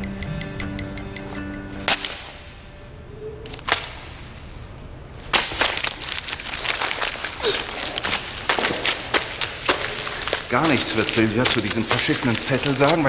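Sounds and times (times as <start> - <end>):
paper snapping: 1.9 - 2.5, 3.4 - 13.0
paper crumpling: 3.5 - 13.0.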